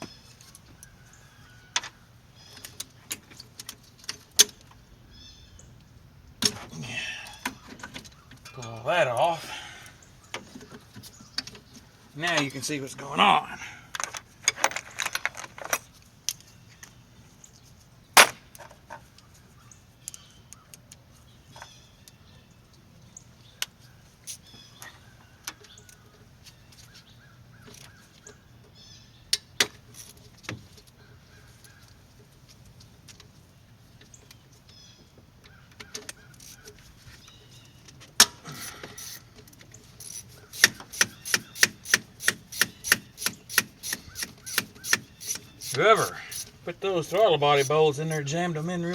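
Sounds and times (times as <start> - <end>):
hand tools clicking and knocking: 18.2 - 18.7, 38.2 - 48.4
ratchet clicking: 40.0 - 46.6.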